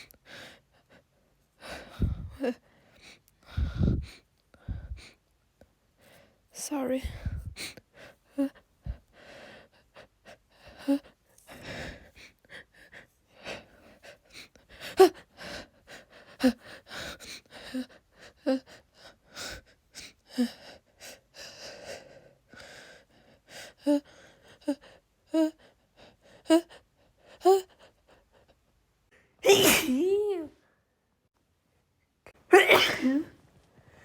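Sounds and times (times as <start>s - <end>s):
gasping breaths and wheezy sniffs: 7.1s - 28.7s
woman sneezing: 29.4s - 30.5s, 32.5s - 33.4s.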